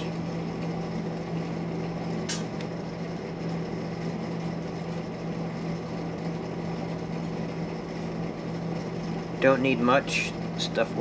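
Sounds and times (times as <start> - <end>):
low electrical hum: 0.0 - 11.0
sharp click: 2.3 - 2.7.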